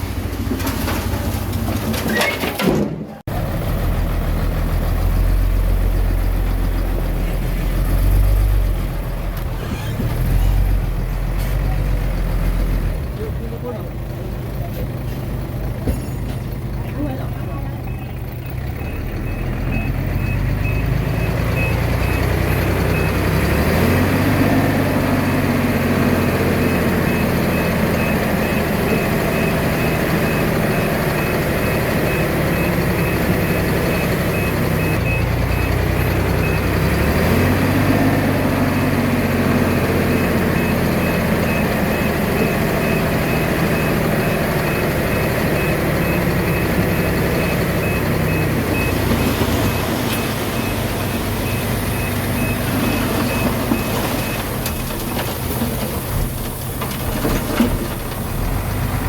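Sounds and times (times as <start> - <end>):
bulldozer diesel engine under load: 0.0 - 59.0
reversing alarm beeping: 17.8 - 54.4.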